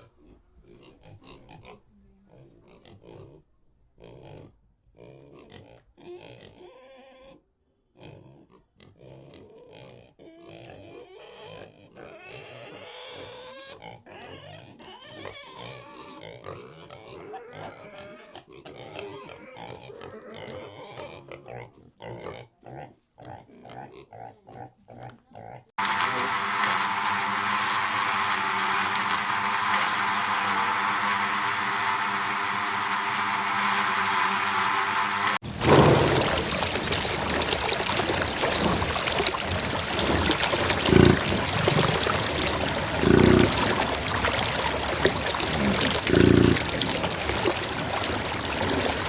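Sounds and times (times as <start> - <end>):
pigs grunting and oinking: 0.0 - 3.4, 4.0 - 25.7, 35.6 - 49.0.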